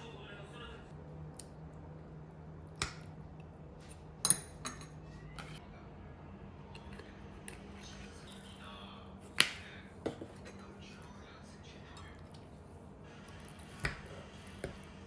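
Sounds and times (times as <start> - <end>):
low steady hum: 0.0 - 15.0
dishes and cutlery clinking: 3.9 - 5.6, 9.4 - 11.2.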